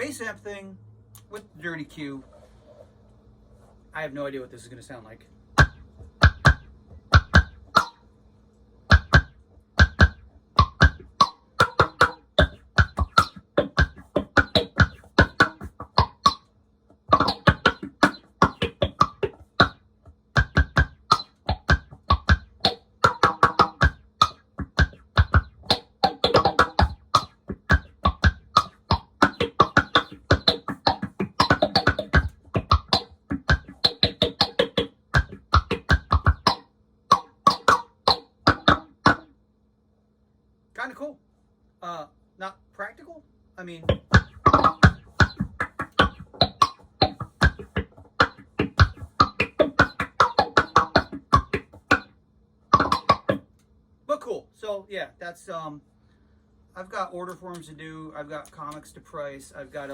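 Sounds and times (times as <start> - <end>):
distorted drum groove: 5.6 - 8.0, 8.9 - 39.3, 43.6 - 53.5.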